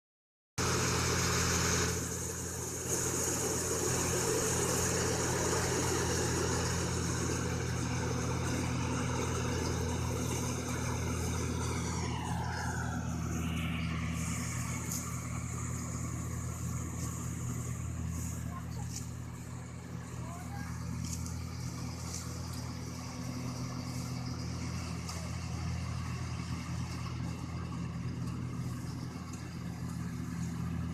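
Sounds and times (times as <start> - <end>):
combine harvester engine humming: 0.6 - 30.9
mechanical whine: 9.2 - 19.2.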